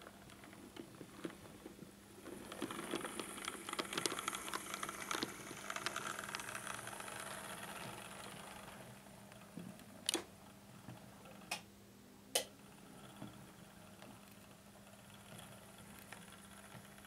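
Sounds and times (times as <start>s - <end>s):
small electric motor whirring: 2.7s - 8.9s.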